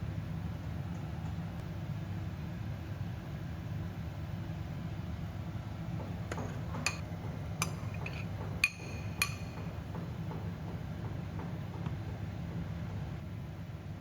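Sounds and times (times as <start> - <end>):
steady low hum: 0.0 - 14.0
tableware clinking: 7.6 - 9.7.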